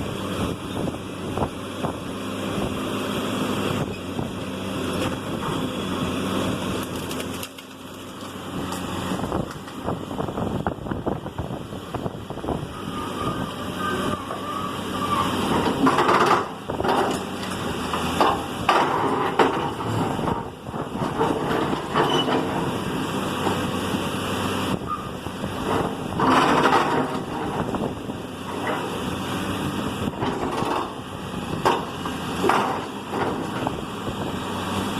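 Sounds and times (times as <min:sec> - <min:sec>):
heavy machine engine running: 0:00.0 - 0:34.9
wood and debris crashing: 0:06.7 - 0:09.7.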